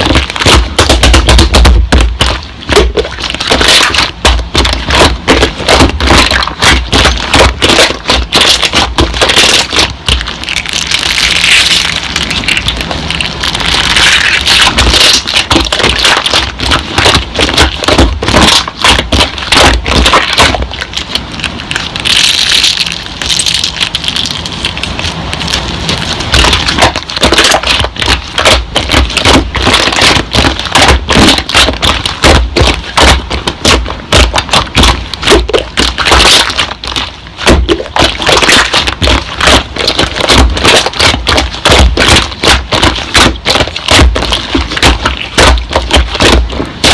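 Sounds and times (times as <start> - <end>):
slime squishing and popping: 0.0 - 46.9.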